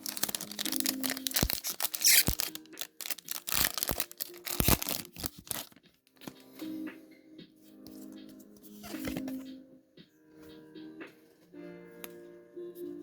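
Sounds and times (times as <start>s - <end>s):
foil wrapper tearing and crinkling: 0.0s - 5.8s.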